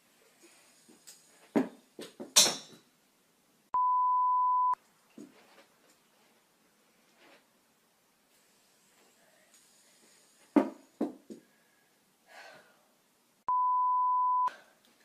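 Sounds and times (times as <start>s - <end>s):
censor bleep: 3.8s - 4.8s, 13.5s - 14.5s.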